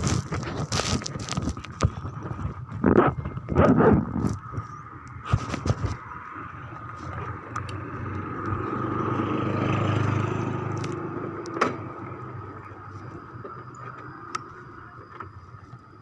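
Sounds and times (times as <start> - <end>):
vehicle passing by: 6.2 - 14.4.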